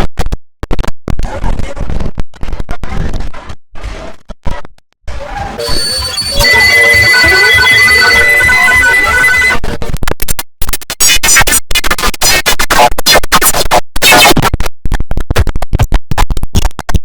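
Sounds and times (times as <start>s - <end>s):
processed computer shutdown tone: 5.4s - 9.6s
chopped stuttering sound fragments: 5.6s - 9.6s.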